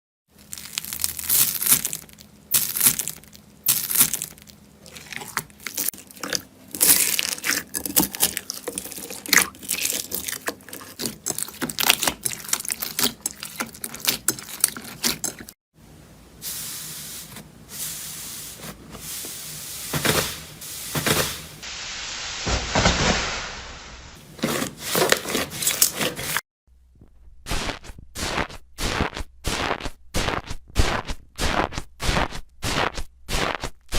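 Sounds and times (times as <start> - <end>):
slime crackling and popping: 0.4 - 5.9, 6.7 - 14.7
slime squishing: 0.4 - 15.5.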